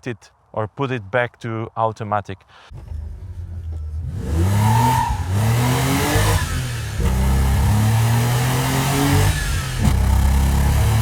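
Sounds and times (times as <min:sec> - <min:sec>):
car engine accelerating: 0:02.8 - 0:11.0.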